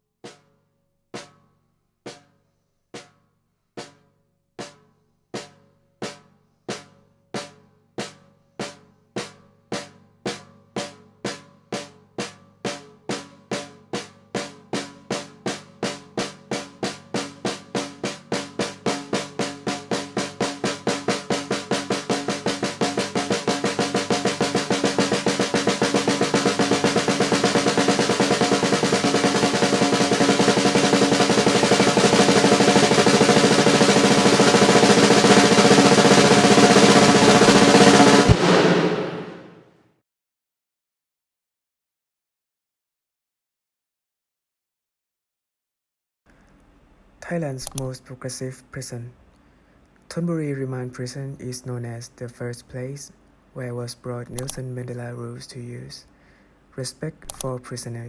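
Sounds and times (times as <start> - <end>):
drum beat speeding into roll: 5.4 - 39.6.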